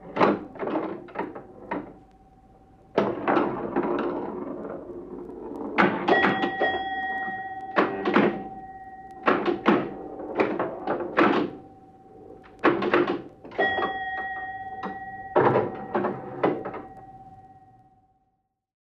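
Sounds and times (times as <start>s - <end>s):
pinball machine thunks and clacks: 0.0s - 2.0s, 3.0s - 4.8s, 5.7s - 8.6s, 9.2s - 11.6s, 12.6s - 17.0s
bell chime ringing: 6.1s - 10.3s, 13.5s - 18.2s.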